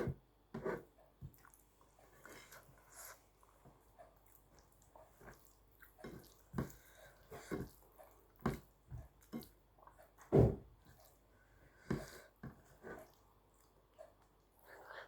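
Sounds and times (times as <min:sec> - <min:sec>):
person chewing wetly: 0:01.3 - 0:10.3, 0:10.9 - 0:11.2.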